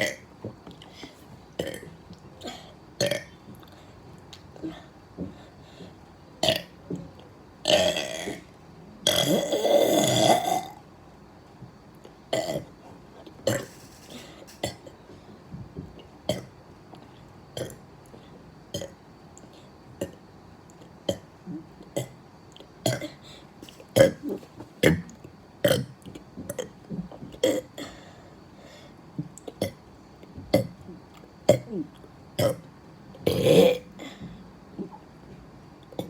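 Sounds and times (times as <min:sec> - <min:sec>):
person burping: 0:01.6 - 0:01.9, 0:02.5 - 0:03.3, 0:07.7 - 0:08.4, 0:09.0 - 0:10.8, 0:33.3 - 0:33.9.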